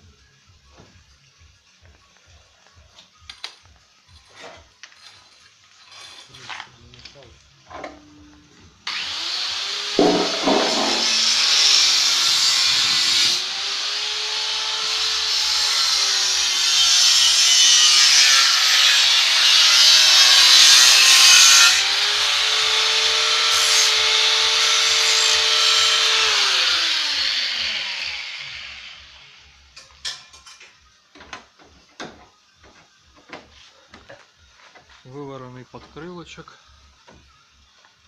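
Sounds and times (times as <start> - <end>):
power tool motor running: 8.9 - 16.6, 21.8 - 29.2
hiss of metal being worked: 9.1 - 13.5.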